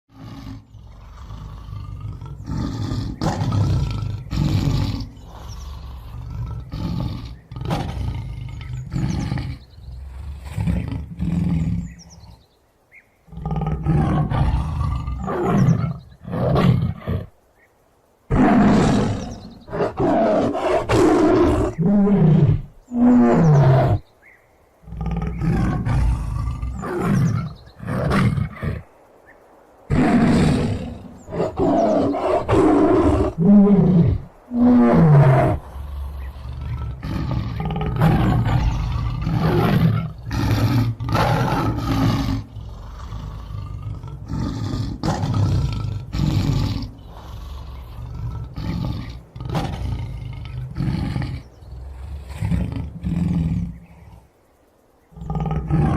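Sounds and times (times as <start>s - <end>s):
tiger roaring: 0.1s - 12.5s, 13.3s - 17.4s, 18.0s - 24.0s, 24.8s - 29.0s, 29.8s - 55.9s.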